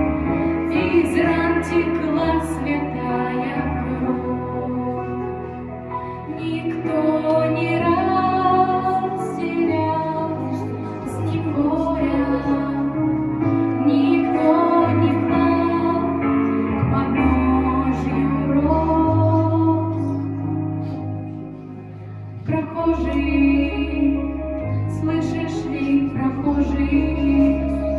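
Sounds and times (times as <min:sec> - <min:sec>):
woman singing: 0:00.0 - 0:20.3, 0:22.4 - 0:27.9
sustained low accompaniment: 0:00.0 - 0:27.9.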